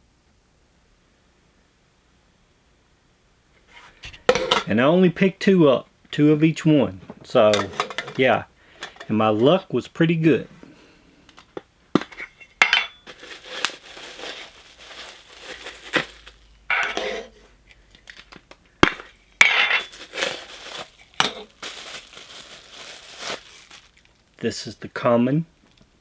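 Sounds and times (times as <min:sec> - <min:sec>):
metal can clicking and clinking: 0:07.5 - 0:09.1
plastic wrap crinkling: 0:11.4 - 0:24.4.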